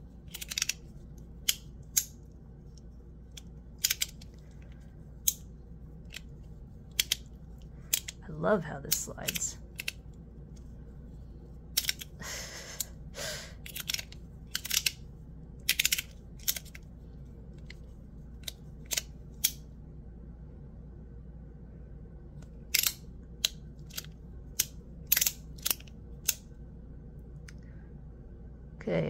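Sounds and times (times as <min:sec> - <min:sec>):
metallic clicks and snaps: 0:00.3 - 0:05.5, 0:06.9 - 0:08.2, 0:08.9 - 0:10.2, 0:11.7 - 0:12.2, 0:13.6 - 0:15.0, 0:15.6 - 0:16.9, 0:17.6 - 0:19.6, 0:22.4 - 0:26.5.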